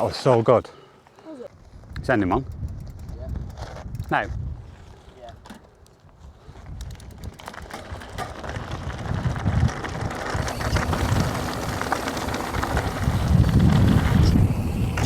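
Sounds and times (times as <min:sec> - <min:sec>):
wind buffeting microphone: 0:01.6 - 0:05.4, 0:06.1 - 0:15.0
bike freewheel ratchet clicking: 0:02.3 - 0:04.1, 0:06.7 - 0:09.0, 0:09.7 - 0:15.0
tyres rumbling over dirt: 0:07.1 - 0:15.0.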